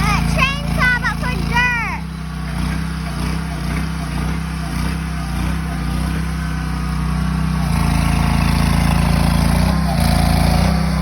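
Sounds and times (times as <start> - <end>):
trencher engine running: 0.0 - 11.0.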